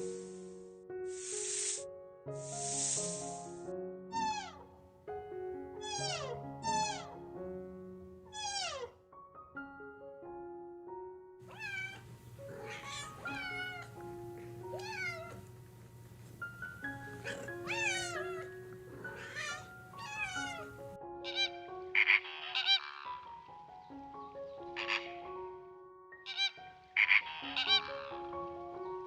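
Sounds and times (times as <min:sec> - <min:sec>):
soft background music: 0:00.0 - 0:29.0
cat meowing: 0:04.1 - 0:04.7, 0:05.8 - 0:07.2, 0:08.3 - 0:09.0, 0:11.5 - 0:15.5, 0:17.1 - 0:23.1, 0:24.8 - 0:25.1, 0:26.3 - 0:28.2.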